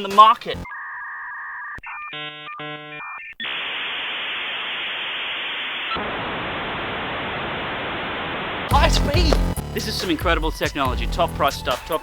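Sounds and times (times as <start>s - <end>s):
chord-like modem beeps: 0.0s - 3.6s
dial-up modem tones: 0.4s - 8.6s
modem handshake static hiss: 3.4s - 9.6s.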